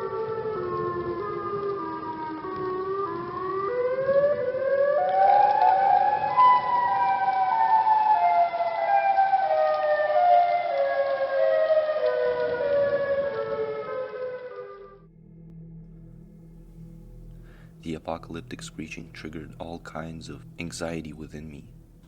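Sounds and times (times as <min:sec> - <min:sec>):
outdoor warning siren wailing: 0:00.0 - 0:18.1.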